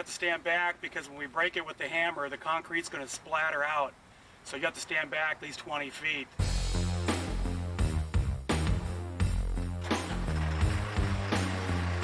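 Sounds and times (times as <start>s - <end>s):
low bass line: 6.4s - 12.0s
music with steady beat: 6.4s - 12.0s.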